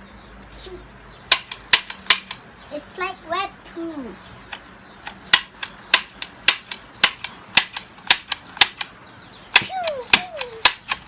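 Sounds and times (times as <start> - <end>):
plastic toy trigger clicking: 1.3 - 2.4, 4.5 - 8.9, 9.5 - 11.0.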